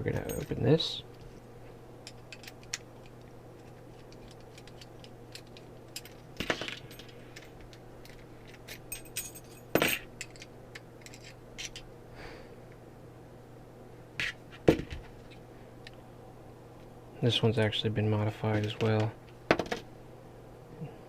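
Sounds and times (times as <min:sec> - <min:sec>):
padlock parts and keys clinking: 0:02.1 - 0:11.9.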